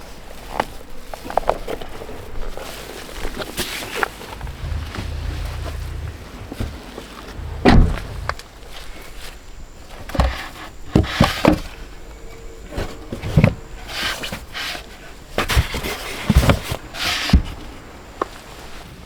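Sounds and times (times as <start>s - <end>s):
rustling and scraping: 3.2s - 8.8s.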